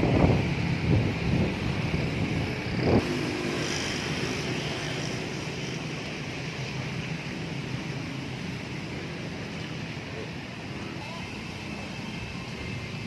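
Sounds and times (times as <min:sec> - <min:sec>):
wind buffeting microphone: 0:00.0 - 0:03.3
strong wind gusting: 0:00.0 - 0:04.0.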